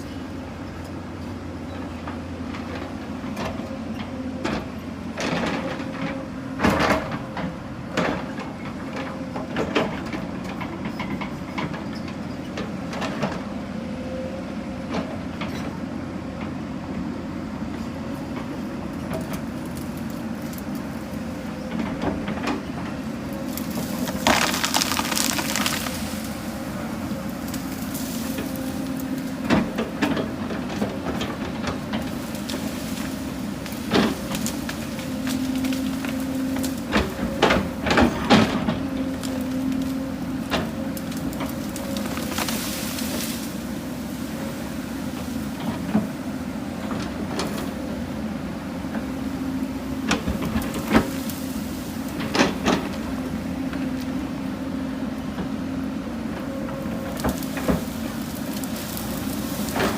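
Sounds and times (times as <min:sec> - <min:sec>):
excavator diesel engine: 0:00.0 - 0:59.9
stones knocking under bucket: 0:23.6 - 0:26.5.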